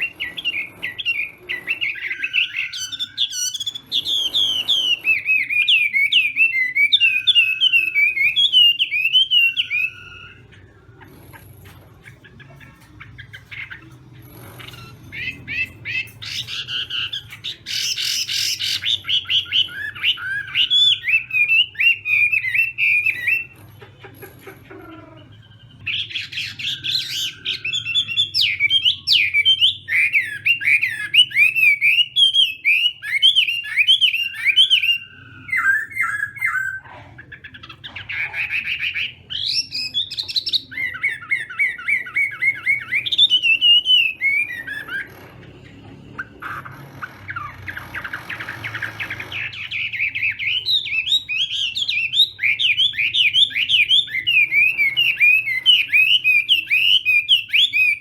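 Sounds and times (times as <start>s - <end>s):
bird singing whistled notes: 48.4s - 58.0s.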